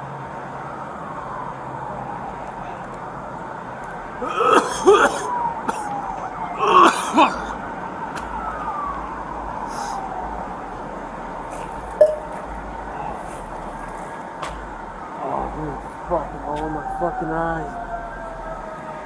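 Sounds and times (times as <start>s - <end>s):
siren wailing: 4.0s - 10.8s, 14.9s - 19.0s
man coughing hard: 4.2s - 5.9s, 6.6s - 7.5s.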